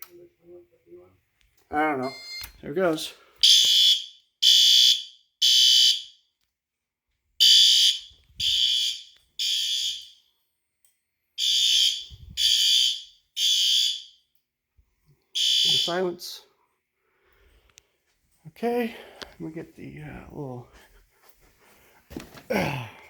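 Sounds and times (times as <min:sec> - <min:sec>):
fire alarm horn blasts: 0:02.0 - 0:02.5, 0:03.4 - 0:06.2, 0:07.4 - 0:10.2, 0:11.4 - 0:14.3, 0:15.4 - 0:16.4.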